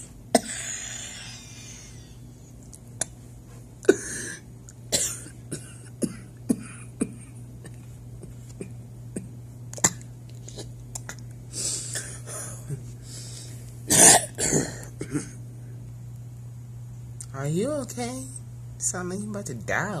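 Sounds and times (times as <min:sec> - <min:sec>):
person coughing: 0:00.4 - 0:02.2, 0:03.8 - 0:10.7, 0:11.8 - 0:12.8, 0:13.9 - 0:15.4.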